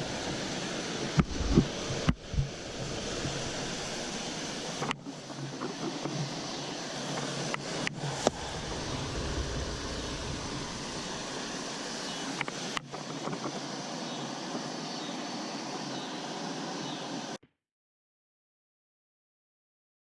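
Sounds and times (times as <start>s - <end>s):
creek water flowing: 0.0s - 14.6s.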